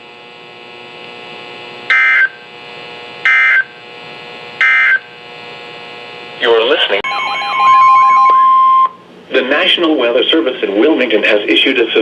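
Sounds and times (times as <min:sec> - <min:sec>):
buzzy digital data chirps: 0:01.9 - 0:02.5, 0:04.6 - 0:05.2, 0:06.4 - 0:09.0.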